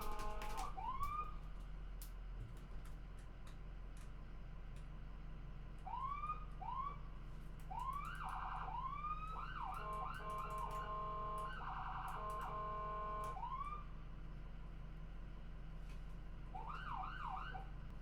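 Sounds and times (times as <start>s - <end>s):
ambulance siren: 0.0s - 1.4s, 5.9s - 7.0s, 7.7s - 13.9s, 16.5s - 17.7s.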